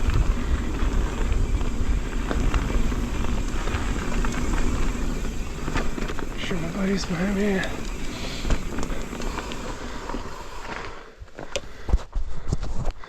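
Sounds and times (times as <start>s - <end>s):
wind rumble on microphone: 0.0s - 9.7s
bike clicks and rattles: 0.0s - 12.0s
tyre noise on dirt: 0.0s - 12.1s.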